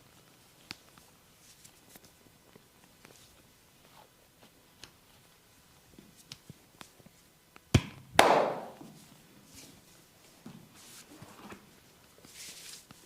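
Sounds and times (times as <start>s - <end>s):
sharp cracks or slaps: 7.7s - 8.8s
short rustle: 10.7s - 13.0s.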